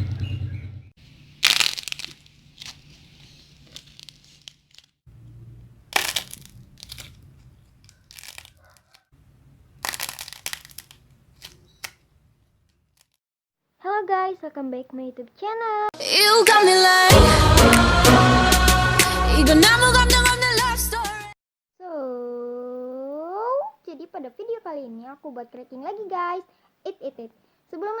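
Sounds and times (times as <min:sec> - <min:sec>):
dried clay crunching and crackling: 0:01.0 - 0:05.0, 0:05.8 - 0:09.0, 0:09.7 - 0:12.0.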